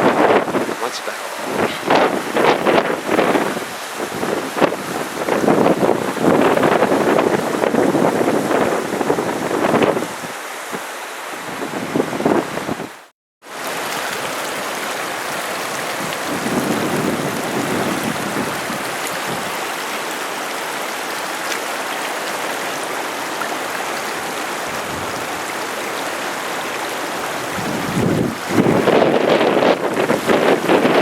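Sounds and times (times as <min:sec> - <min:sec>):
wind buffeting microphone: 0:00.0 - 0:13.0, 0:15.5 - 0:19.8, 0:27.3 - 0:31.0
flooding river water: 0:00.0 - 0:31.0
heavy downpour: 0:00.0 - 0:31.0.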